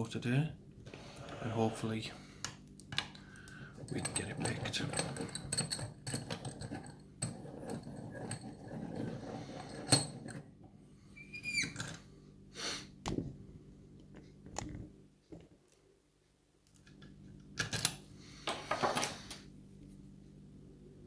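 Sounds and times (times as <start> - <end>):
padlock and keys jangling: 3.8 - 7.0.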